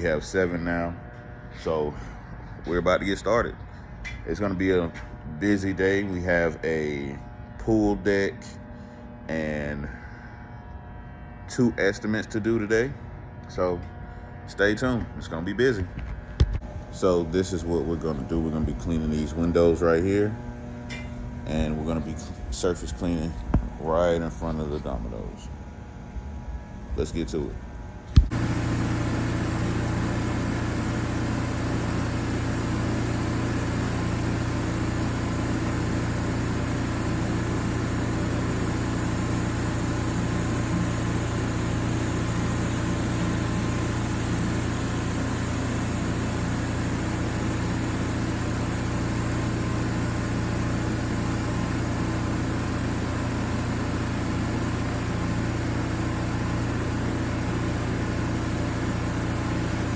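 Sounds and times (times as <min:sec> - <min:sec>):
pressure washer engine running: 0:00.0 - 0:10.0, 0:28.2 - 0:59.9.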